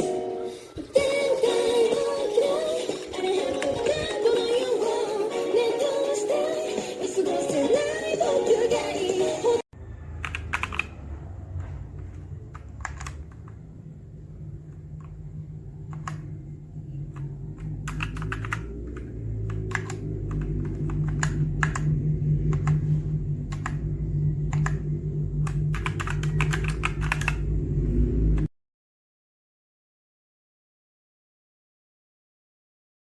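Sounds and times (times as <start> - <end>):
steady low hum: 9.8 - 28.5
mechanical keyboard typing: 10.2 - 10.9, 12.4 - 13.6, 15.9 - 16.3, 17.1 - 21.9, 24.5 - 24.8, 25.4 - 27.4.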